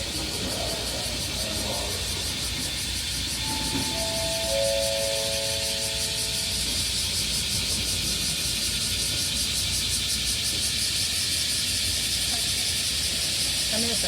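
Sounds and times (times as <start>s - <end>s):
cicadas buzzing: 0.0s - 14.0s.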